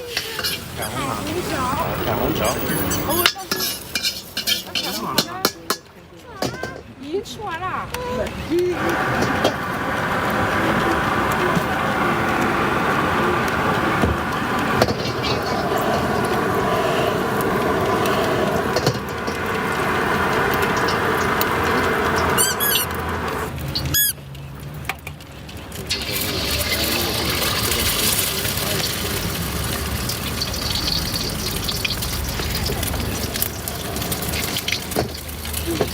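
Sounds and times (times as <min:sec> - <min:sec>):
busy street-food stall noise: 0:00.0 - 0:35.9
short high-pitched squeals: 0:22.1 - 0:24.2.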